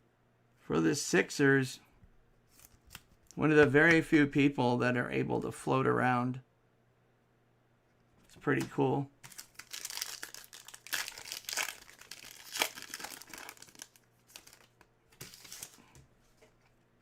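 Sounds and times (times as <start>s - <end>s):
plastic wrapper crinkling: 9.2s - 16.0s.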